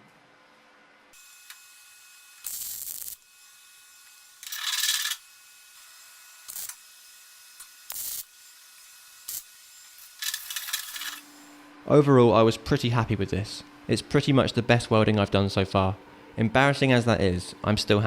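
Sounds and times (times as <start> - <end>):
welding bursts: 1.2 - 11.6.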